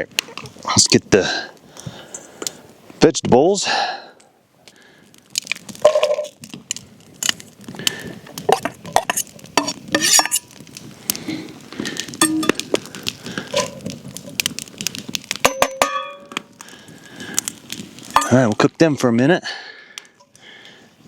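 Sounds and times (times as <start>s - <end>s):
utensil clinking and scraping a pot: 8.5s - 10.6s, 12.2s - 12.7s.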